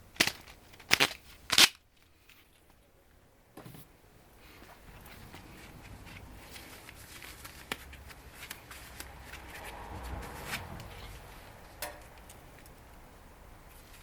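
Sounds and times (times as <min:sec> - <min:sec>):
rustling: 0:00.0 - 0:02.9, 0:03.6 - 0:13.0, 0:13.6 - 0:14.0
clicks and taps of objects: 0:11.8 - 0:12.8.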